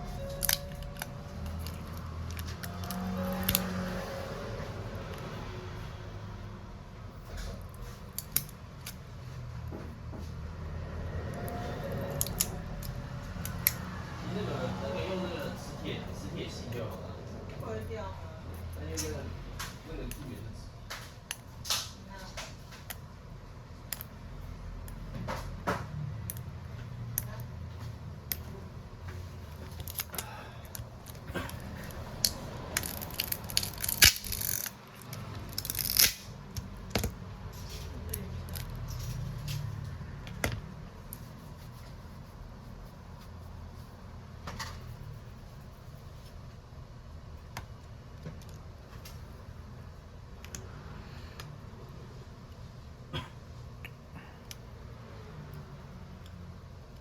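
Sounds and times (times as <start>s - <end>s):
steady low hum: 26.2s - 57.0s.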